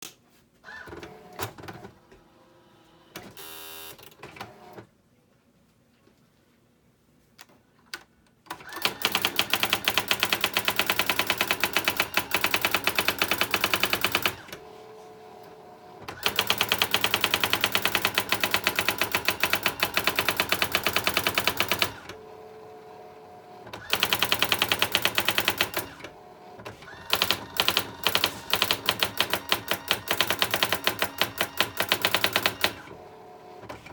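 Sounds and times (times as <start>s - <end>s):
typewriter whirr: 8.5s - 33.9s
typewriter strikes: 27.0s - 32.8s.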